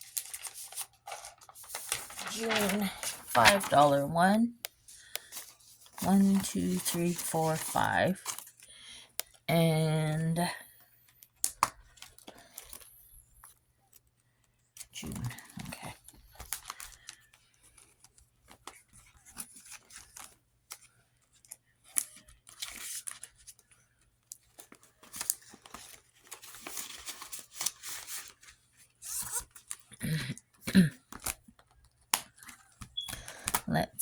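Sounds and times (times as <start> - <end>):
paper bills rustling: 0.0 - 4.3, 4.9 - 8.7.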